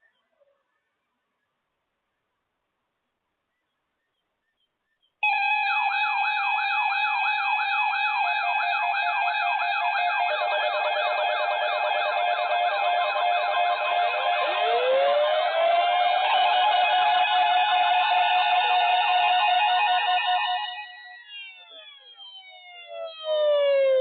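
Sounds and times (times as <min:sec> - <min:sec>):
electronic sirens yelping: 0:05.2 - 0:24.0
siren winding up: 0:05.2 - 0:24.0.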